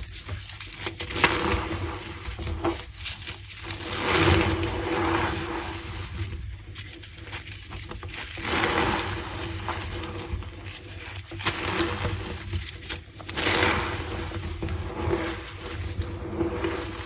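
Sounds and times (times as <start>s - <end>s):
chalk crunching and squeaking: 0.0s - 17.0s.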